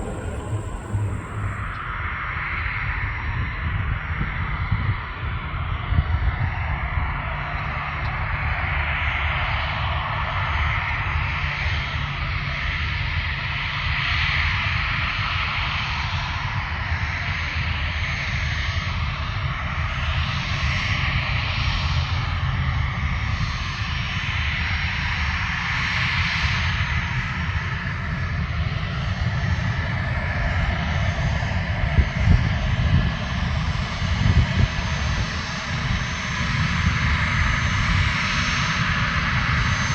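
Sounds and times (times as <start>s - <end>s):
jet engines running: 0.0s - 1.9s.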